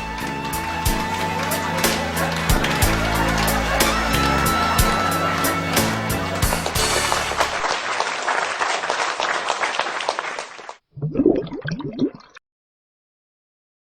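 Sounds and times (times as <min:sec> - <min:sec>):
background music: 0:00.0 - 0:07.6
studio applause: 0:00.0 - 0:10.8.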